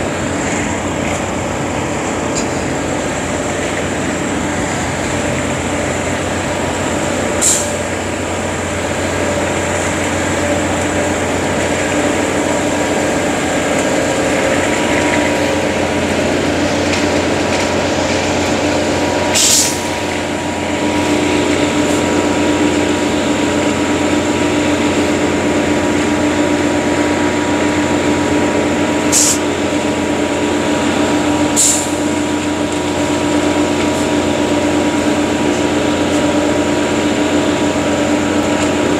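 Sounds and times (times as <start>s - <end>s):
diesel engine running: 0.0s - 38.9s
short air hisses: 7.4s - 7.8s, 19.3s - 19.9s, 29.1s - 29.4s, 31.6s - 32.0s.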